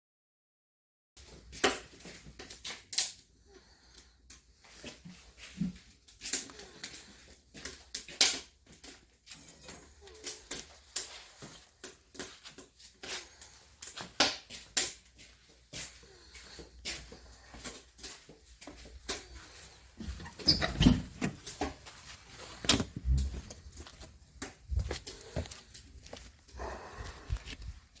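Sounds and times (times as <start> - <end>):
clicks taps and rustling: 17.8 - 26.5.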